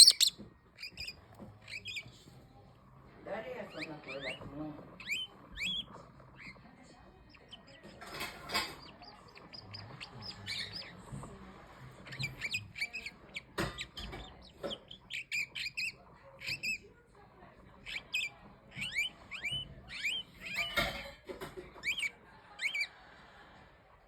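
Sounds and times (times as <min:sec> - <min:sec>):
parrot chirping: 0:00.0 - 0:02.1, 0:05.0 - 0:06.6.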